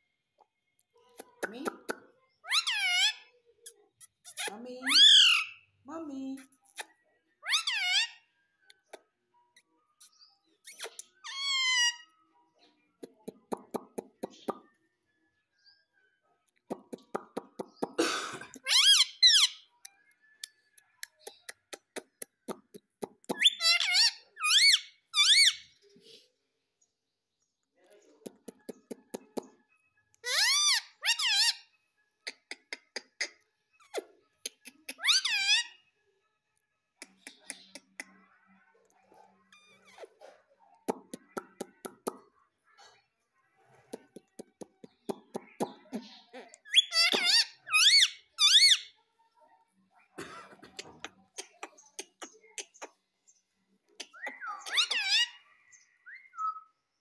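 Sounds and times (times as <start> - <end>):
parrot squawking: 2.4 - 3.2, 4.3 - 5.6, 7.4 - 8.2, 10.7 - 12.1, 18.6 - 19.6, 23.4 - 25.7, 30.2 - 31.7, 34.7 - 35.8, 46.4 - 48.9, 54.0 - 55.4.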